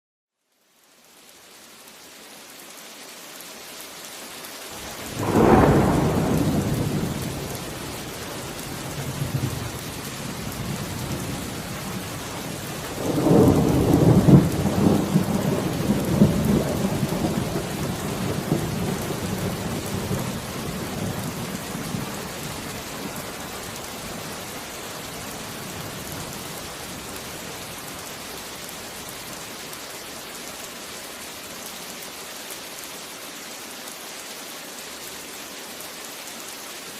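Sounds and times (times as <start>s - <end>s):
steady rain: 0.4s - 36.9s
rolling rumble of thunder: 4.8s - 24.3s
thunderclap: 5.0s - 22.2s.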